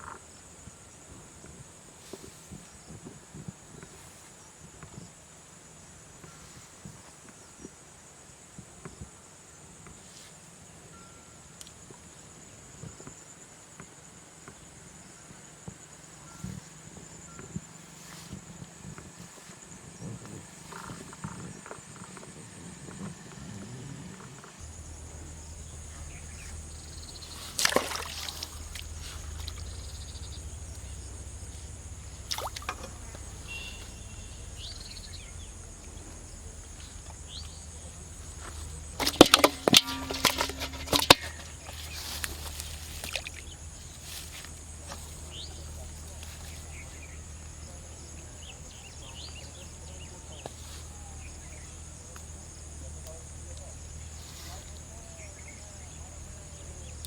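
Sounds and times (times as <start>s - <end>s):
high outdoor hiss: 0.0s - 57.0s
water splashing: 24.5s - 47.0s.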